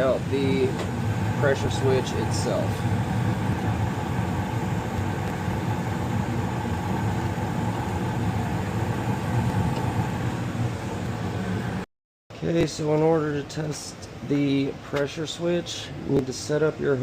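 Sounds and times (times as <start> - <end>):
gas furnace humming: 0.0 - 11.9.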